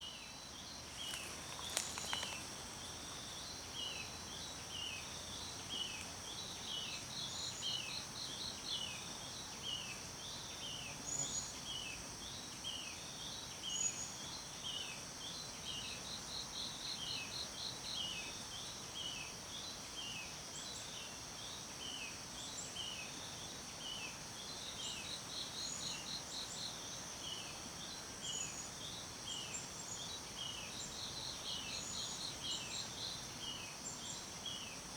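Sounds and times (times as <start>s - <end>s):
high insect drone: 0.1s - 19.8s.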